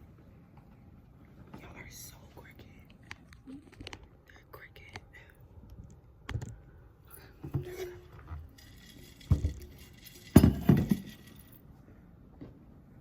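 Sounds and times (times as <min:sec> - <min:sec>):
small hard objects clinking: 0:08.4 - 0:11.6.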